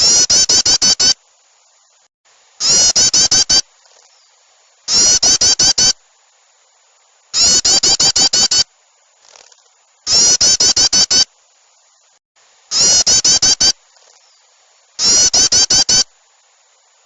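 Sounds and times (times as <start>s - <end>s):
small birds chattering: 0.0s - 1.2s, 2.6s - 6.0s, 7.4s - 8.6s, 9.2s - 11.3s, 12.7s - 16.1s.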